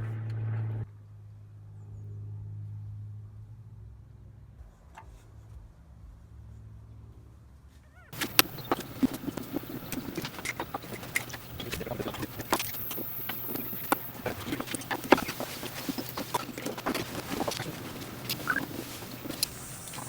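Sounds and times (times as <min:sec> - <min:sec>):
faint low hum: 0:00.0 - 0:20.0
knocks clicks and clatter: 0:08.2 - 0:20.0.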